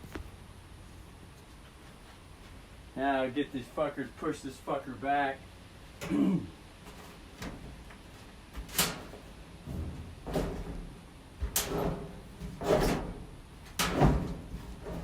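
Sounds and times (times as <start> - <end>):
knocks and clunks of metal panels: 6.9 - 7.9, 8.5 - 15.0.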